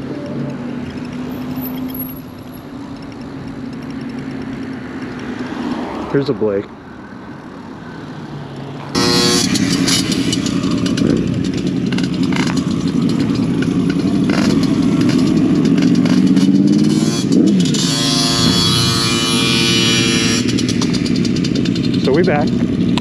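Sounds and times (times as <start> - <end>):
motorcycle engine revving: 8.9 - 23.0.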